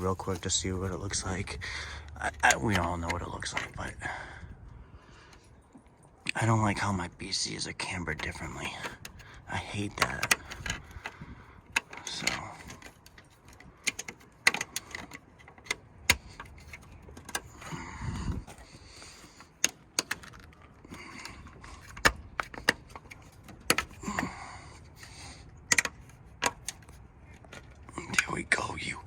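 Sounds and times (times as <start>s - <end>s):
sharp plastic clicks and knocks: 2.0s - 3.8s, 8.1s - 24.4s, 25.0s - 28.3s.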